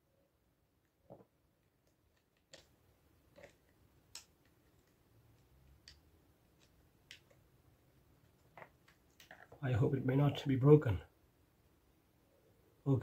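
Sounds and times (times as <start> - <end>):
faint plastic clicks and taps: 0.8 - 7.5.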